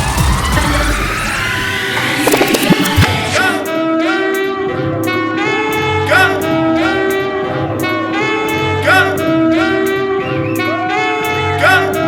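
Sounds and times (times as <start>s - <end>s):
electronic dance music: 0.0s - 3.8s
rising synth sweep: 0.1s - 3.6s.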